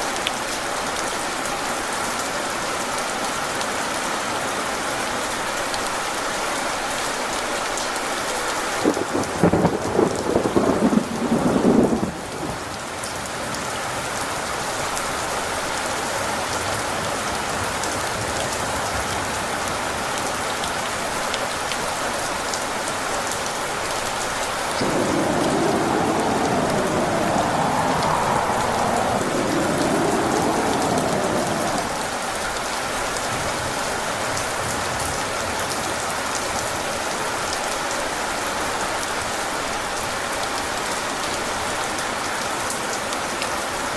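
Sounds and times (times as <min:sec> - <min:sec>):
steady rain: 0:00.0 - 0:43.9
thunder rumbling: 0:08.8 - 0:14.0, 0:24.7 - 0:33.7.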